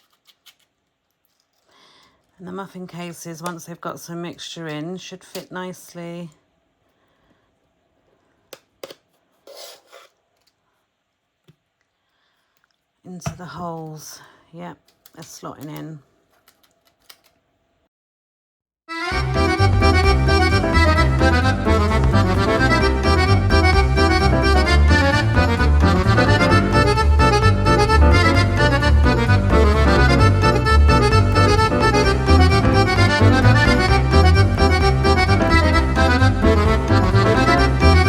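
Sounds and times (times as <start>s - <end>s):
music with pulsing bass: 19.1s - 38.0s.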